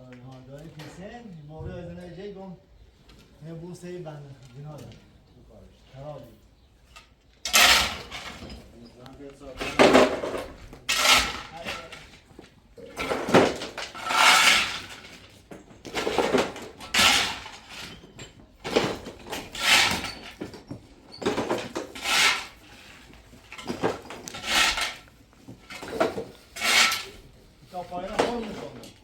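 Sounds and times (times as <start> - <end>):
metal clanking and scraping: 6.9 - 29.0.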